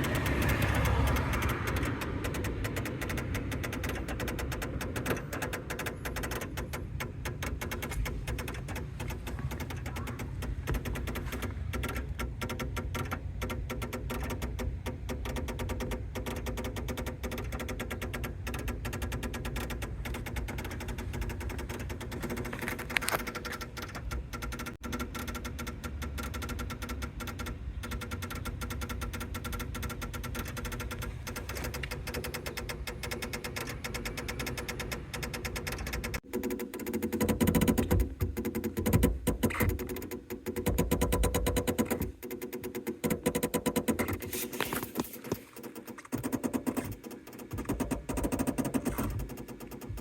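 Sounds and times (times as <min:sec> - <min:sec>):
rapid clicking from car brakes: 0:00.0 - 0:50.0.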